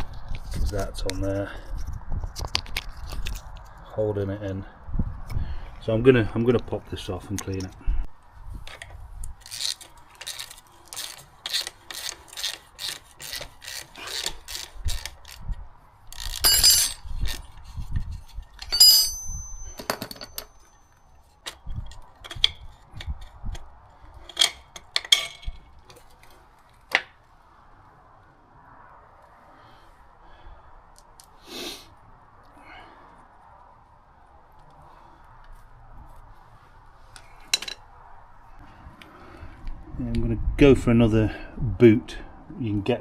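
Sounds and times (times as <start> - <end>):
metal tools knocking and clinking: 16.2 - 17.4, 18.6 - 22.6, 24.3 - 25.6.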